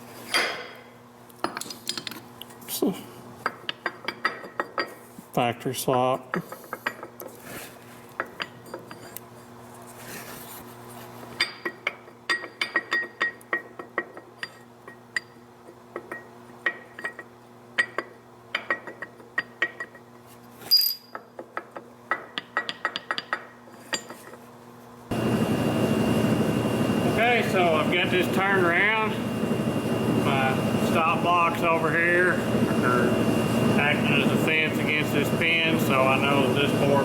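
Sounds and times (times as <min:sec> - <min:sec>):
metal tools clinking: 0:20.6 - 0:21.2
electric machine hum: 0:25.1 - 0:37.0.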